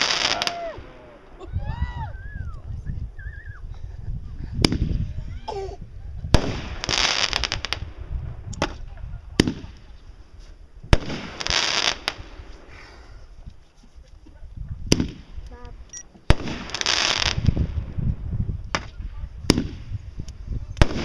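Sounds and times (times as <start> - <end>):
fireworks hissing bursts: 0.0 - 1.2, 6.4 - 13.0, 16.2 - 18.0
fireworks bangs: 0.0 - 1.5, 6.2 - 10.2, 10.9 - 12.8, 14.8 - 15.4, 16.2 - 20.0, 20.8 - 21.0.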